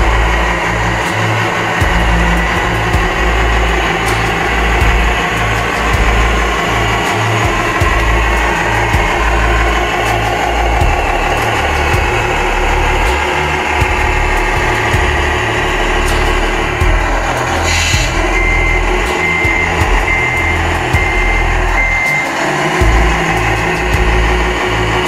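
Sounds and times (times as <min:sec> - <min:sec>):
model engine idling: 0:00.0 - 0:25.0.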